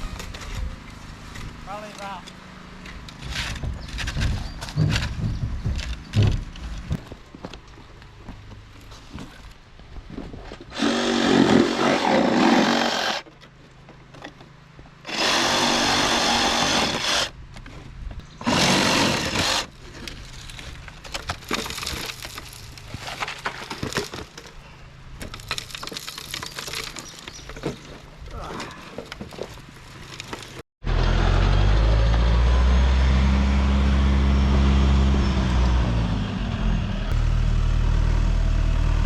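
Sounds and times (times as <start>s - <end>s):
power saw cutting: 10.7s - 13.2s, 15.1s - 17.3s, 18.4s - 19.7s.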